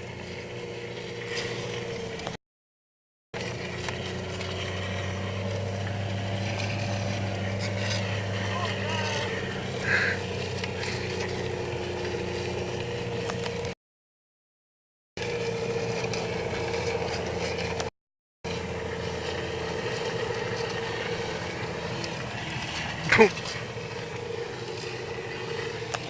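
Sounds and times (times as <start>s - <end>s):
car engine running: 0.0s - 2.4s, 3.4s - 13.8s, 15.2s - 26.0s
hiss of snow and wind: 18.5s - 26.0s.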